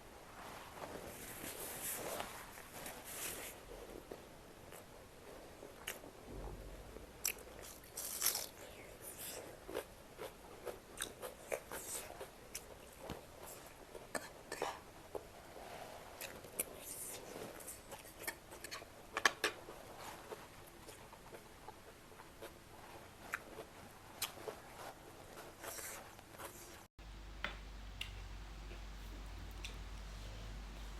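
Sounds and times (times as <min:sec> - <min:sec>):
person biting and chewing: 0:07.3 - 0:12.8
crisp crunches: 0:07.6 - 0:09.4.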